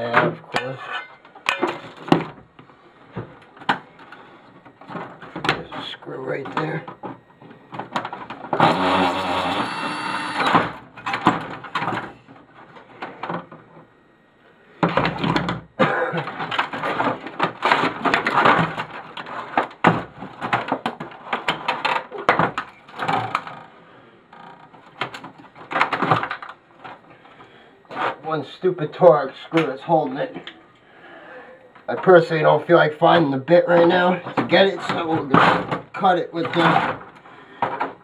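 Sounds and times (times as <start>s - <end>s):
plastic parts clattering: 16.2s - 23.6s, 24.7s - 27.0s, 33.9s - 38.0s.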